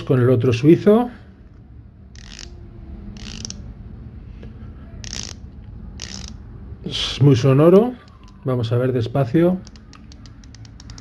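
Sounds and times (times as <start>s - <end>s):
watch bezel ratchet clicks: 2.2s - 2.6s, 3.2s - 3.6s, 5.0s - 5.4s, 6.0s - 6.4s, 9.6s - 11.0s.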